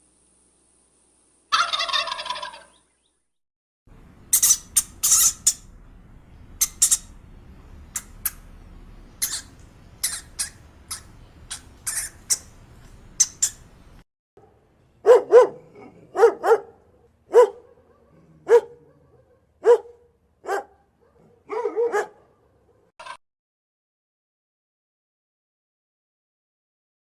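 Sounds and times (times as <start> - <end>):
hamster squeaking: 4.3 - 5.7, 9.2 - 12.5
dog barking: 14.4 - 23.0.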